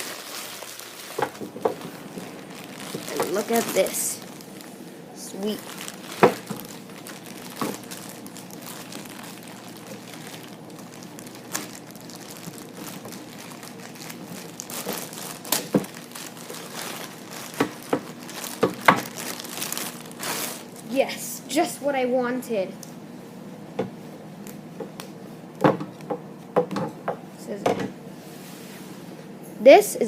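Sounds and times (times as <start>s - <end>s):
crinkly packaging rustling: 0.0s - 20.9s.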